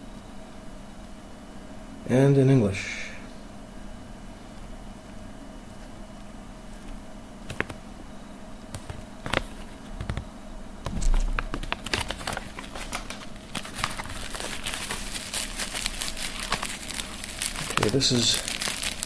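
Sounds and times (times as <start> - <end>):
plastic wrapping crinkling: 10.9 - 19.0.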